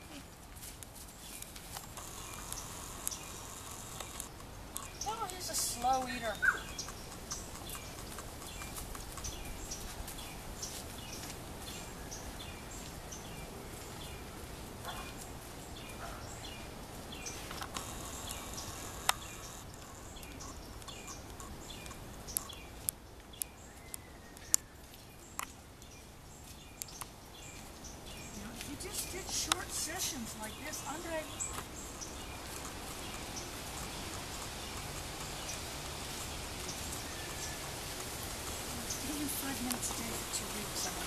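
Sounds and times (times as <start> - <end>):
background noise outdoors: 0.0 - 41.0
bird chirping: 1.1 - 41.0
sharp clicks: 1.4 - 9.5, 17.5 - 23.5.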